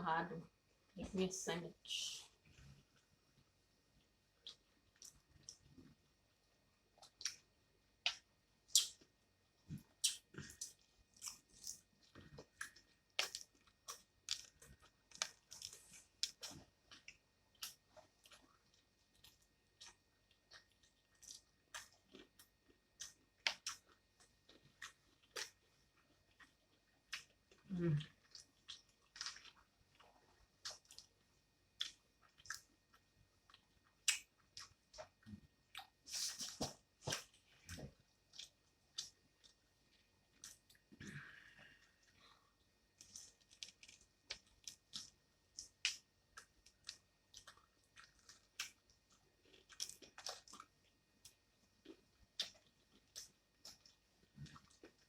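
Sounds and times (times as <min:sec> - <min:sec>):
crunching and chewing fried food: 0:02.3 - 0:55.0.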